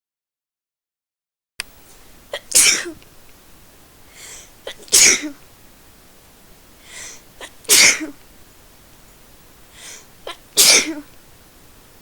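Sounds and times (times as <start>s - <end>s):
person sneezing: 2.3s - 3.0s, 4.2s - 5.4s, 6.9s - 8.2s, 9.8s - 11.1s
breathy in-breath: 4.1s - 4.6s, 6.8s - 7.3s, 9.7s - 10.1s.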